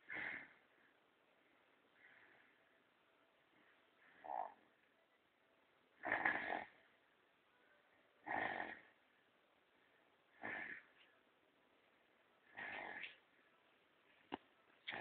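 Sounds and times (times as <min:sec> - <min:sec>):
person snoring: 0:06.0 - 0:06.8, 0:08.2 - 0:08.9, 0:12.5 - 0:13.0.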